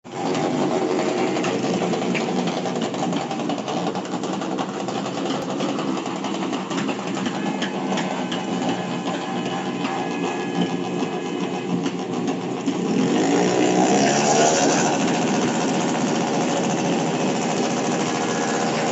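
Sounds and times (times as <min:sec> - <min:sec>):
rapid small bangs and rattles: 0:00.1 - 0:13.0.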